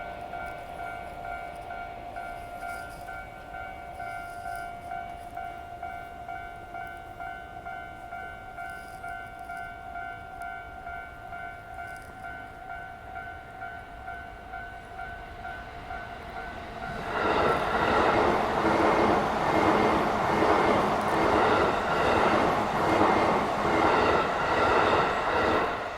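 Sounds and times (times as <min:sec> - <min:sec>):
level crossing warning bell: 0:00.0 - 0:25.3
train wheels rumbling and clattering: 0:14.8 - 0:25.9.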